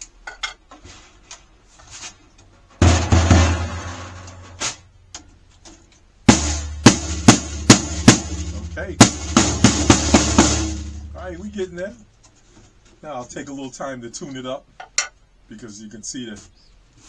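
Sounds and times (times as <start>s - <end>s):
snare drum hits: 2.8s - 4.8s, 6.3s - 11.6s.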